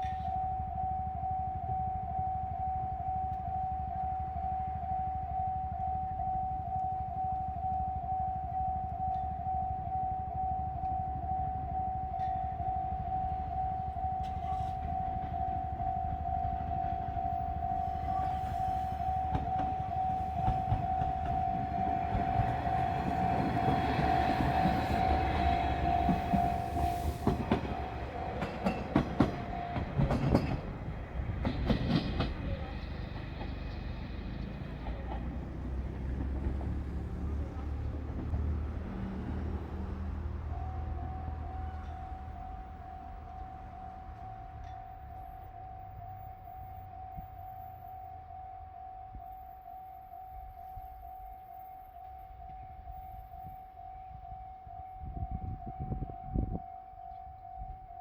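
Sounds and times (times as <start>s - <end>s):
level crossing alarm ringing: 0.0s - 33.4s, 38.6s - 58.0s
diesel railcar engine rumble: 0.0s - 58.0s
train wheels clacking on rails: 14.2s - 45.5s.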